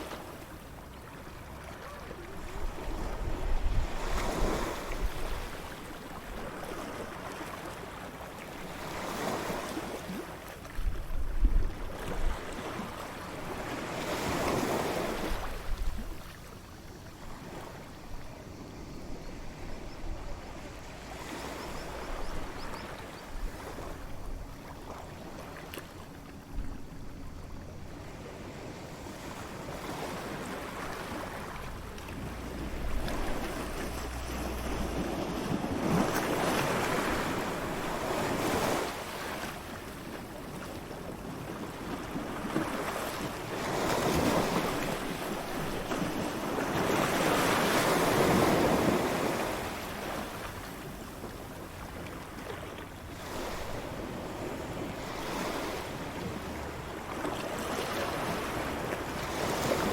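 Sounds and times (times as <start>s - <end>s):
ocean waves breaking on shore: 0.0s - 59.9s
wind rumble on microphone: 2.3s - 7.0s, 10.1s - 16.4s, 26.4s - 38.9s.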